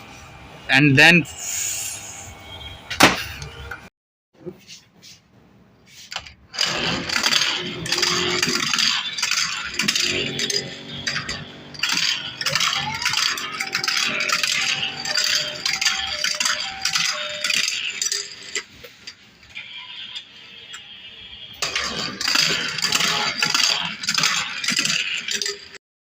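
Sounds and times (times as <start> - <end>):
toys rattling and clattering: 6.2 - 19.2, 21.6 - 25.8
electronic toy tune: 9.9 - 18.0.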